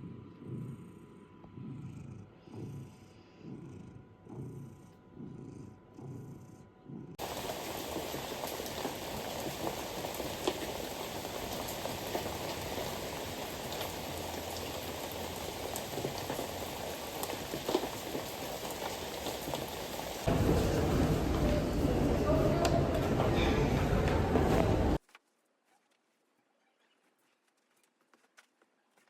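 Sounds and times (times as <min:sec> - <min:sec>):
steady rain falling: 0:07.2 - 0:25.0.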